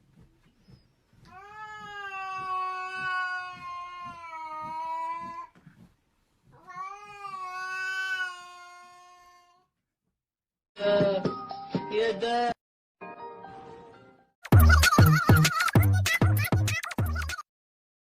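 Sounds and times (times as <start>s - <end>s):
cat yowling: 6.6s - 9.6s.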